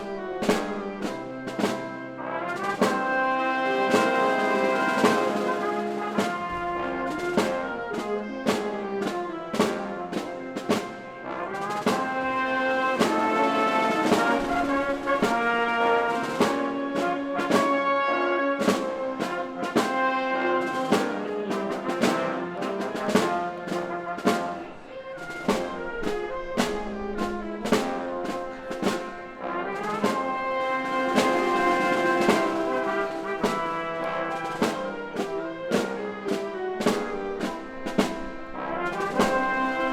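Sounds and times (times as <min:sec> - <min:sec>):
orchestra brass playing: 0:00.0 - 0:39.9
percussion strokes: 0:20.7 - 0:39.9.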